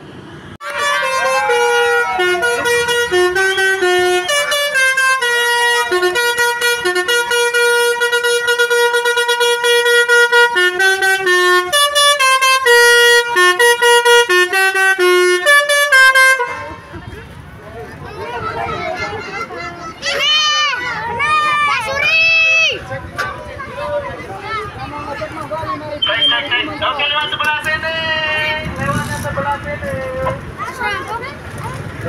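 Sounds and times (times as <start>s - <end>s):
multi-tone bus horn tune: 0.6s - 17.3s.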